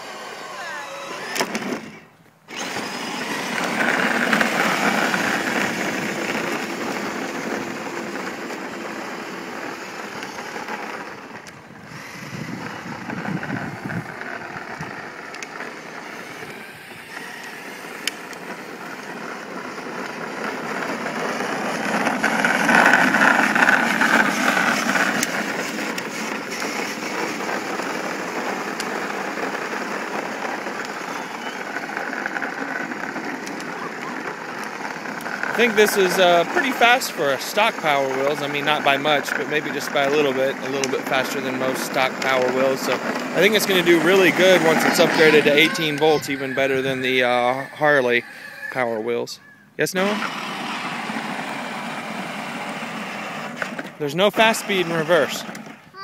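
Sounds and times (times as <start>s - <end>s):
electric motors whining: 0.0s - 56.0s
plastic wheels rumbling on pavement: 0.0s - 56.0s.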